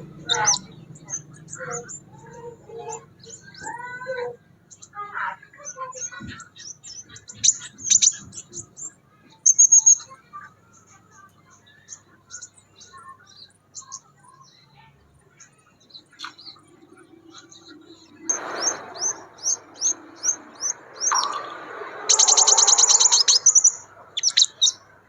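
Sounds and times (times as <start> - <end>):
bird trilling: 0.0 - 10.2, 15.9 - 24.9
bird chirping and twittering: 0.0 - 25.0.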